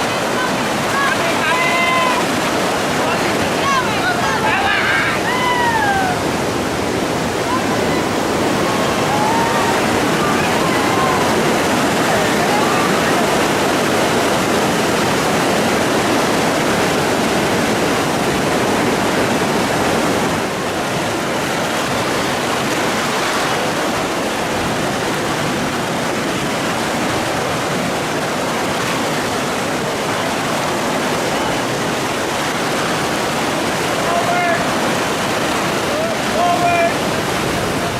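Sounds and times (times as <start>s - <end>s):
fast-flowing river water rushing: 0.0s - 37.9s.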